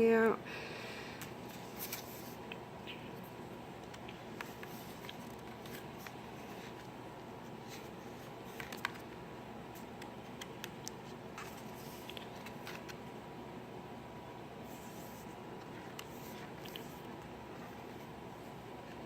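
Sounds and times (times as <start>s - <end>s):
steady room hiss: 0.0s - 19.0s
book pages rustling and clicking: 1.2s - 2.6s, 3.8s - 9.2s, 9.8s - 13.0s, 14.7s - 18.1s.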